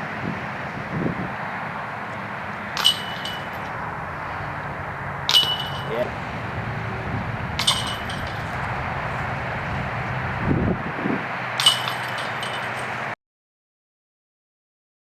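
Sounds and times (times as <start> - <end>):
discs clanking on metal chains: 1.9 - 10.4, 11.6 - 13.1.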